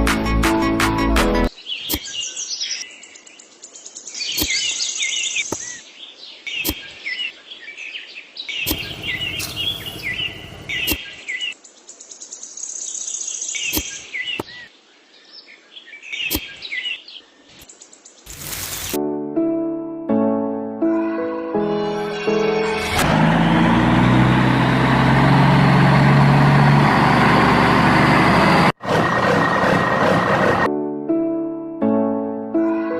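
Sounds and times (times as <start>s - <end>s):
small birds chirping: 1.5s - 18.9s.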